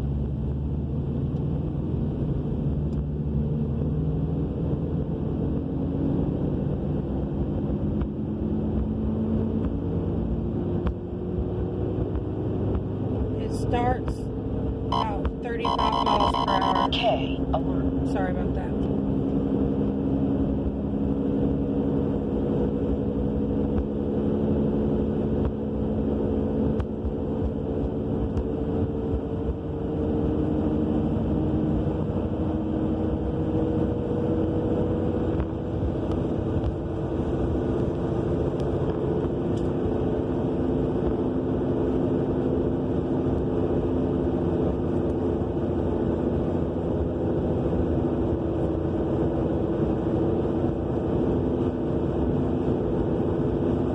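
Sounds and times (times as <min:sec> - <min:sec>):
car cabin road roar: 0:00.0 - 0:53.9
droning tones drifting in pitch: 0:13.4 - 0:19.1.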